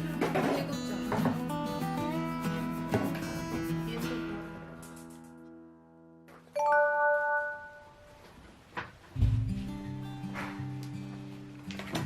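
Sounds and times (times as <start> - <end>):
glockenspiel note: 6.6 - 8.2.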